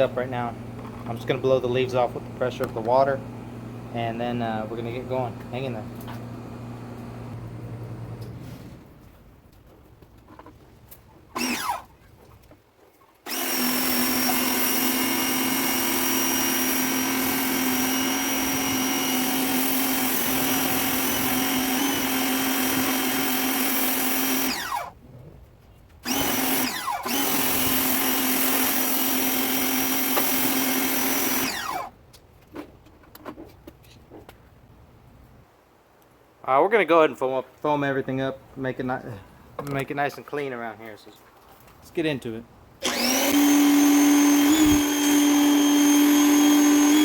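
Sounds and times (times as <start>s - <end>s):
electric pressure washer spraying: 42.8s - 47.0s.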